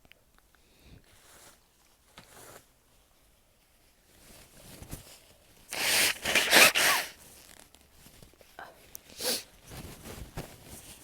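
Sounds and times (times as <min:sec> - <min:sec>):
person blowing nose: 0:05.7 - 0:07.2, 0:09.2 - 0:09.5.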